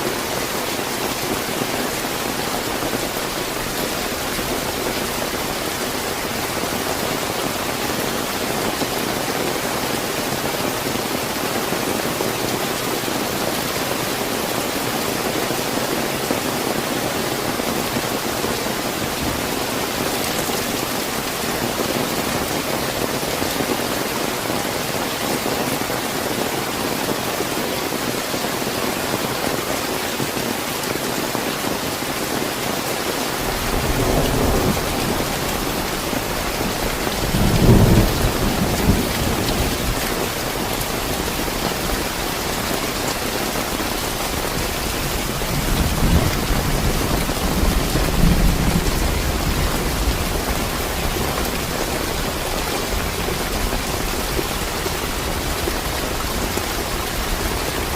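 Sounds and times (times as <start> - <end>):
heavy rain: 0.0 - 57.9
thunder rumbling: 33.3 - 57.9.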